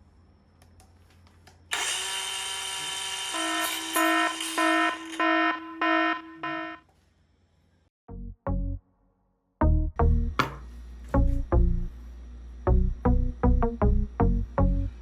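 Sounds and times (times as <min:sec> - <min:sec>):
electronic alarm tone beeping: 0:03.4 - 0:06.8.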